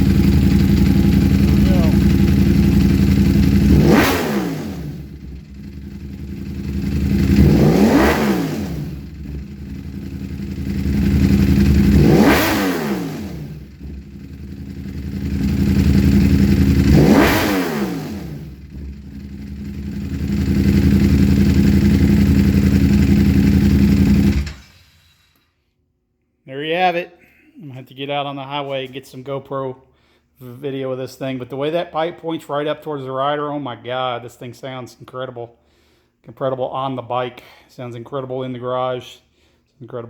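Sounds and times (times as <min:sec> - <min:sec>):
motorcycle engine revving: 0:00.0 - 0:25.0.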